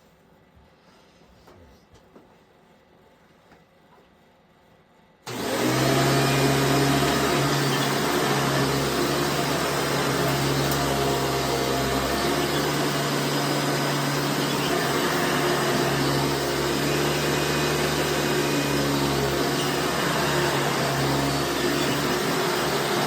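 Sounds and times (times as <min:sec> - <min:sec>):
vacuum cleaner motor hum: 0:05.3 - 0:23.0.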